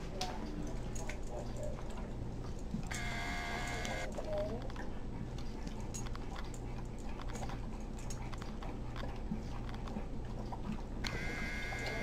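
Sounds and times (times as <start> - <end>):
dog chewing food: 3.6 - 12.0.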